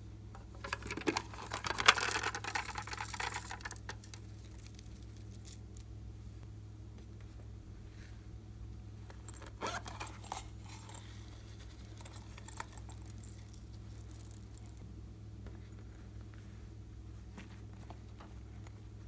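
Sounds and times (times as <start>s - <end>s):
sticky clicks and crackles: 0.6s - 5.6s.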